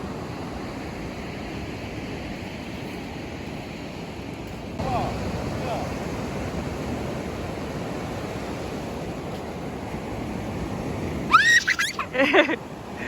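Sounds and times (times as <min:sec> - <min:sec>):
steady rushing outdoor noise: 0:00.0 - 0:13.0
high-pitched cry: 0:11.3 - 0:12.2.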